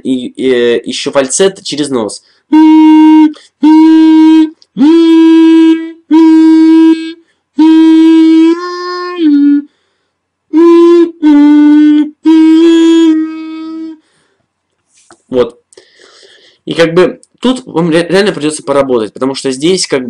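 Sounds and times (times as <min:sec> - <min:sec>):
beatbox siren hum: 0:02.5 - 0:09.7, 0:10.5 - 0:14.0.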